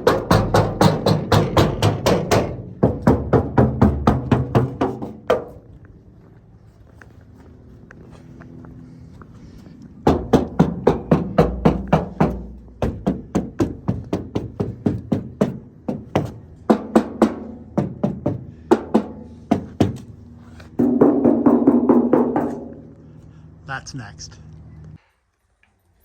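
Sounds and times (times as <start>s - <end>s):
tapping on sheet-metal car door: 0.0s - 5.5s, 10.1s - 20.0s
loud steady humming: 0.0s - 25.0s.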